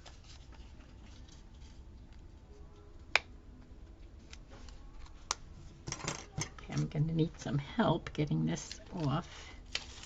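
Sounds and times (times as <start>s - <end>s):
faint paper handling: 0.0s - 3.1s, 8.5s - 10.0s.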